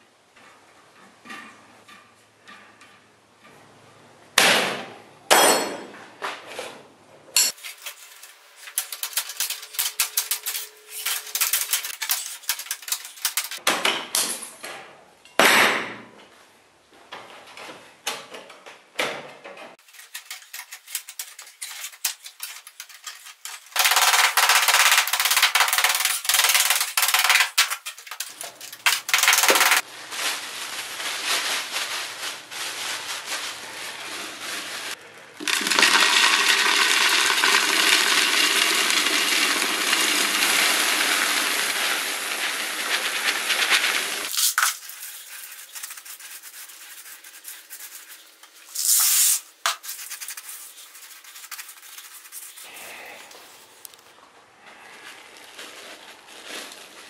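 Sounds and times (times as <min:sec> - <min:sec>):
rapid clicking and scraping: 0:07.5 - 0:13.6, 0:19.8 - 0:29.8, 0:42.8 - 0:52.7
hard objects knocking and clanging: 0:19.9 - 0:29.8.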